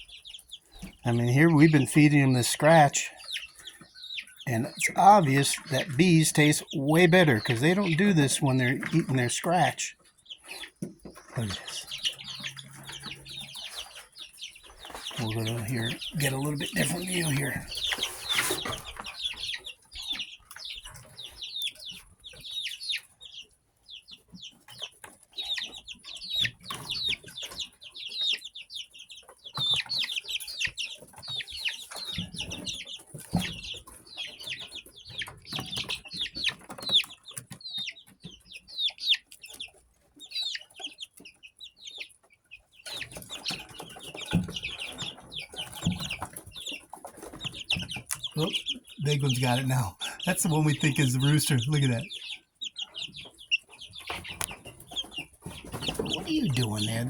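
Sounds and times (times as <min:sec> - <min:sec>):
chicks peeping: 0:00.0 - 0:57.0.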